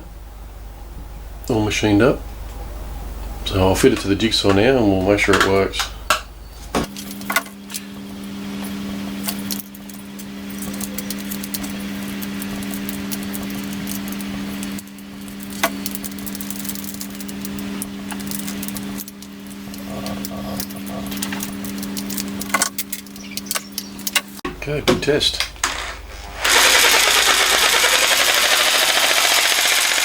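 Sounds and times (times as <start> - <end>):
jigsaw motor hum: 25.6 - 30.0
jigsaw blade rattling: 26.3 - 30.0.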